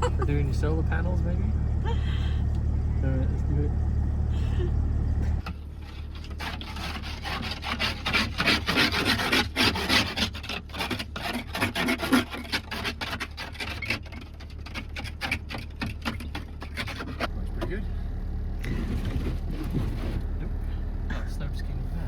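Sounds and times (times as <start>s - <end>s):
engine humming: 0.0s - 8.4s, 14.1s - 22.0s
brush scraping snow and ice: 5.8s - 17.3s, 18.6s - 20.3s.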